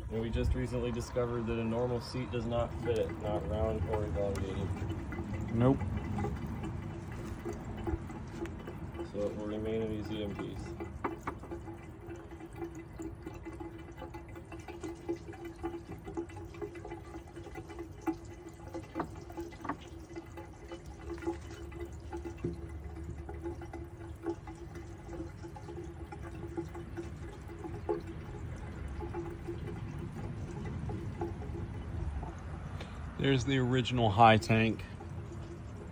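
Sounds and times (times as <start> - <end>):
small drips and ticks: 0.0 - 35.9
water running in toilet: 0.0 - 35.9.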